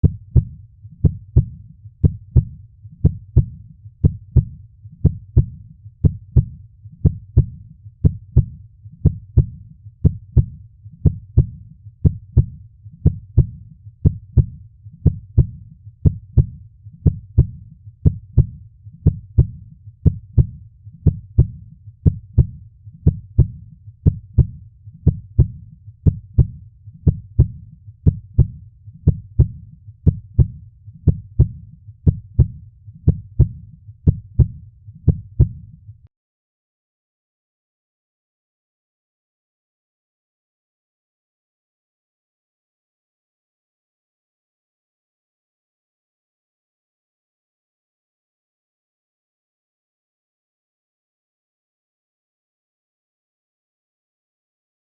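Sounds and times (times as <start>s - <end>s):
heartbeat thumps: 0.0s - 35.8s.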